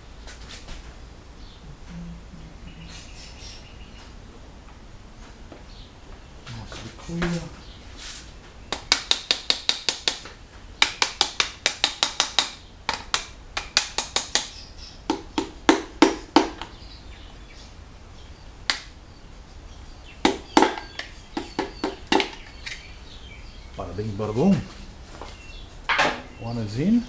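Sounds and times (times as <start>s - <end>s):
rapid taps on a piston: 8.7s - 14.5s.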